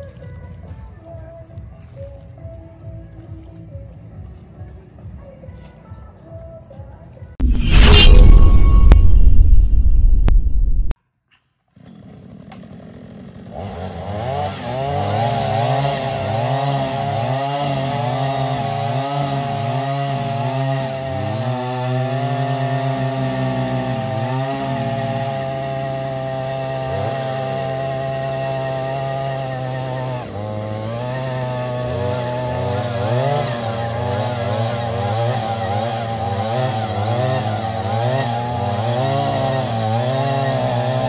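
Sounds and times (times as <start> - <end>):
loud sound ending abruptly: 7.4 - 11.0
small two-stroke engine revving: 11.8 - 41.0.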